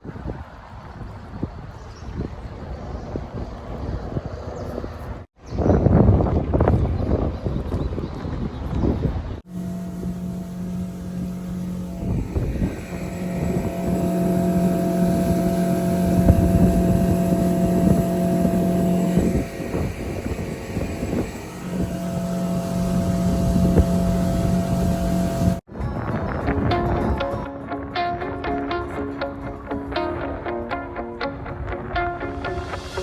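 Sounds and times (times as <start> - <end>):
wind on microphone: 0.0 - 27.7
boat motor running: 9.5 - 25.7.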